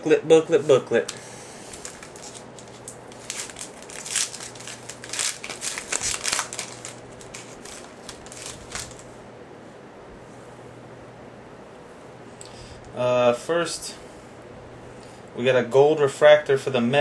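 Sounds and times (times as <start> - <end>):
card pack wrapper crinkling: 1.6 - 9.1.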